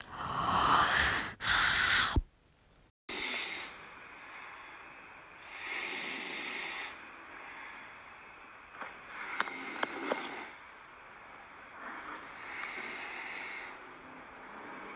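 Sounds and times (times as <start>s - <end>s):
small ticks: 8.7s - 10.5s, 12.1s - 13.0s.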